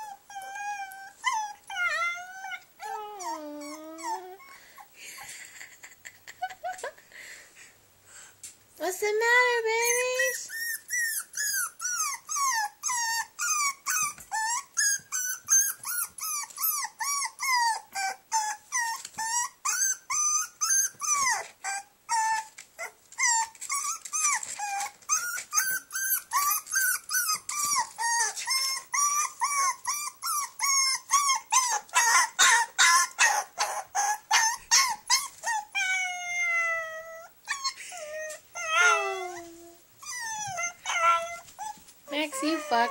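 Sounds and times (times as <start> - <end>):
puppy whining and yelping: 0.0 - 7.0, 9.8 - 42.9.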